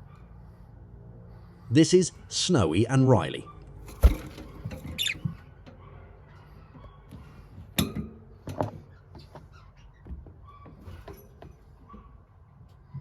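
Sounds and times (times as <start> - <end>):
budgerigars chirping: 4.8 - 5.3.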